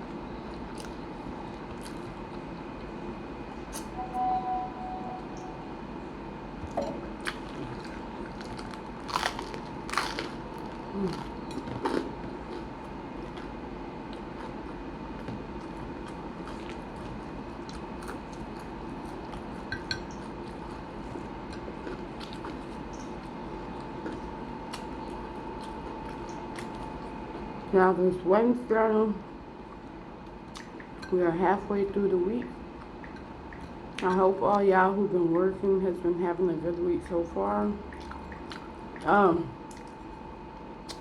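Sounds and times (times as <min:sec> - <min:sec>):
faint steady hum: 0:00.0 - 0:41.0
crunchy biting and chewing: 0:07.2 - 0:27.4.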